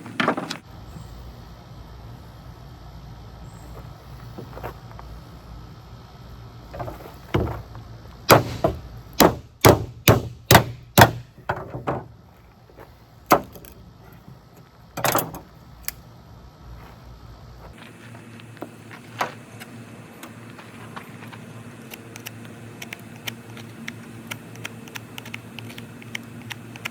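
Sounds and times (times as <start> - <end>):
sharp wooden knocks: 6.8 - 7.6, 8.3 - 12.1, 13.3 - 13.6.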